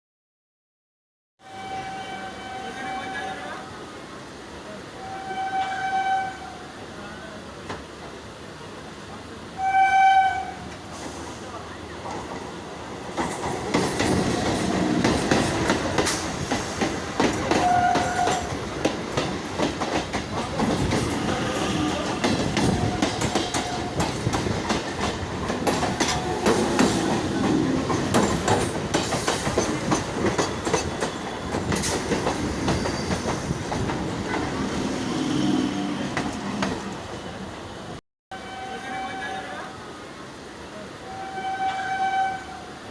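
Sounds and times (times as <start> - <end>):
train wheels clacking on rails: 12.0 - 37.4.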